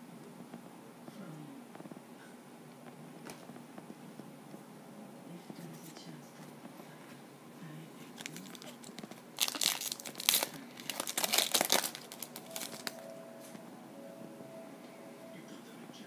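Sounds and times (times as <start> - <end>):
plastic wrapper tearing and crinkling: 8.2 - 13.1.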